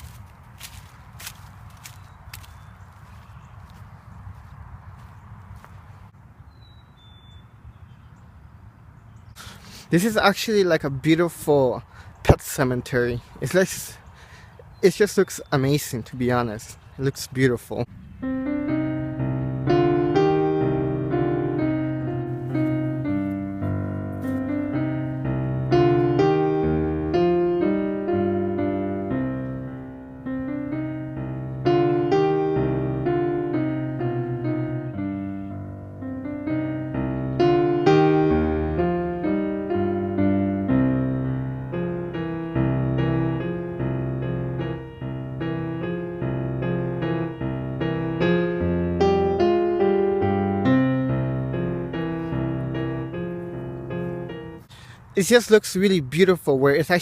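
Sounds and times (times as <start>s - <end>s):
slow solo piano piece: 18.2s - 54.7s.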